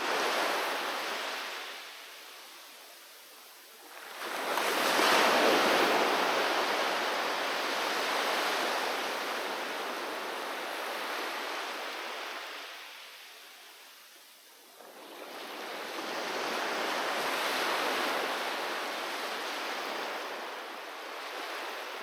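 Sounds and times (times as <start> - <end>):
wave breaking on beach: 0.0 - 2.2, 3.9 - 13.2.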